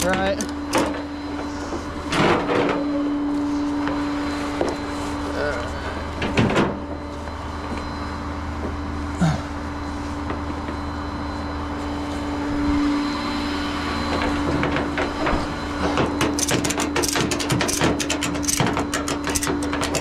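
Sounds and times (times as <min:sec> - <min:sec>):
metallic clicks and rattles: 0:16.2 - 0:20.0.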